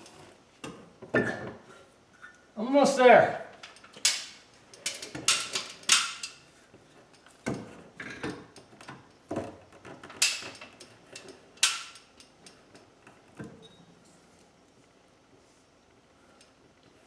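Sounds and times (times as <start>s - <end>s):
metallic clanks and clicks: 3.6s - 6.4s.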